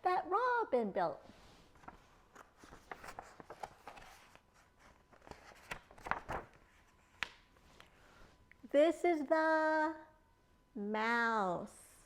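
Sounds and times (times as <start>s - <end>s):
book being handled: 1.4s - 8.0s.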